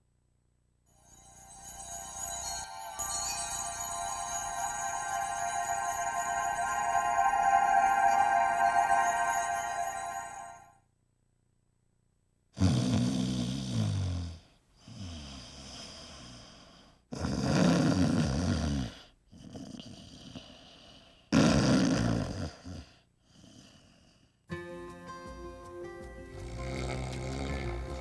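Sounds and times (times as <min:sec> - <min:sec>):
music: 0:00.9 - 0:10.7, 0:24.5 - 0:28.0
person snoring: 0:12.6 - 0:24.0, 0:26.4 - 0:28.0
breathing: 0:14.4 - 0:17.1, 0:18.9 - 0:21.3, 0:22.8 - 0:24.5.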